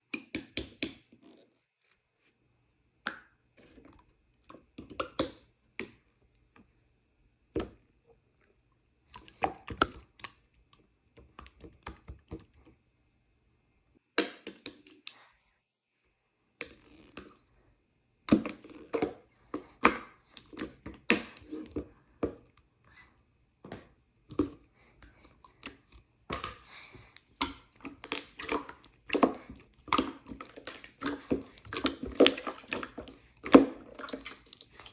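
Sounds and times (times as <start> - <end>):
slime squished by hand: 27.2 - 34.9.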